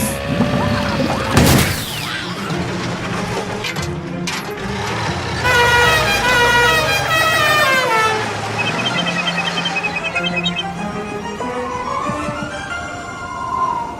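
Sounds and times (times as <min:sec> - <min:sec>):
rapid high twittering beeps: 0:07.3 - 0:11.0.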